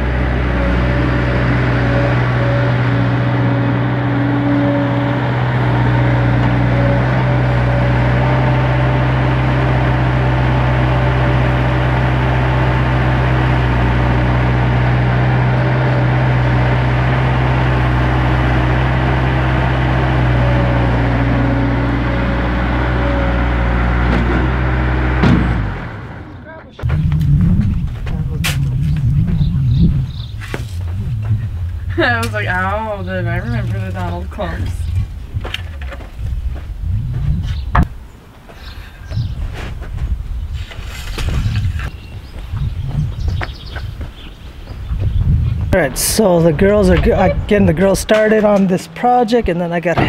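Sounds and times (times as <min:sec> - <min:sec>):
engine running steadily: 0:00.0 - 0:38.0.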